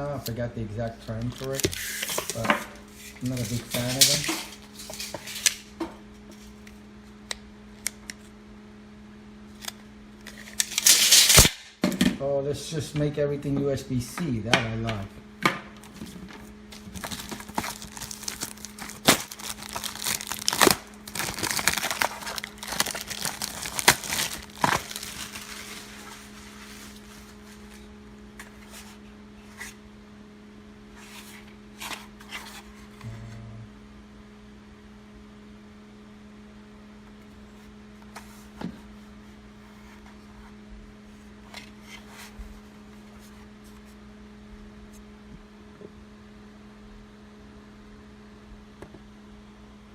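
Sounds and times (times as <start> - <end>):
steady low hum: 0.0 - 49.9
packaging crinkling and tearing: 1.2 - 2.4, 3.2 - 5.7, 9.5 - 11.6, 16.7 - 27.1.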